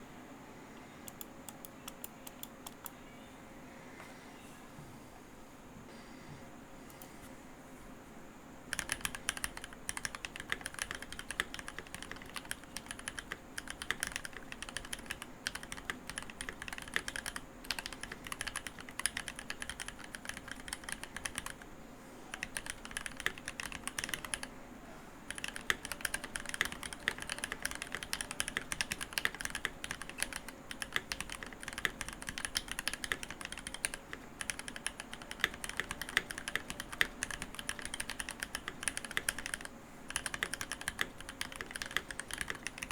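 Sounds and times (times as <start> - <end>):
fast typing on mechanical keyboard: 8.7 - 21.7, 22.3 - 24.5, 25.3 - 42.9.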